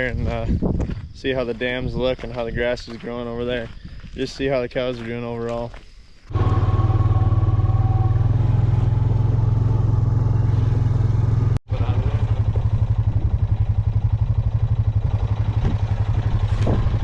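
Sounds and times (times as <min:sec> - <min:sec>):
vehicle engine rumbling: 0:06.3 - 0:17.0.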